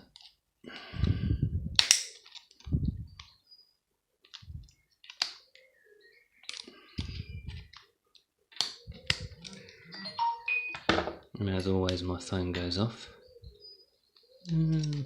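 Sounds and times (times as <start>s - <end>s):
clicks of plastic parts: 4.2s - 5.7s, 6.4s - 9.8s.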